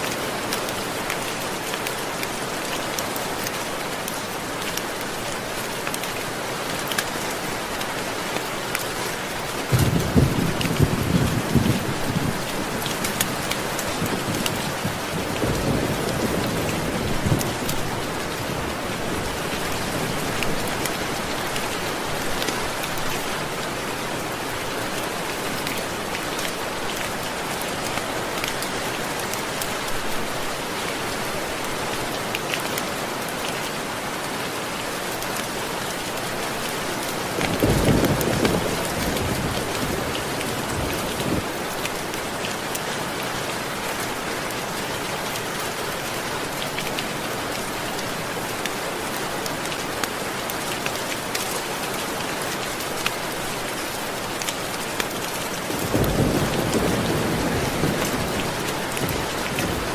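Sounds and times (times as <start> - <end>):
steady rain falling: 0.0 - 59.9
low rolls of thunder: 9.7 - 12.5, 55.7 - 59.9.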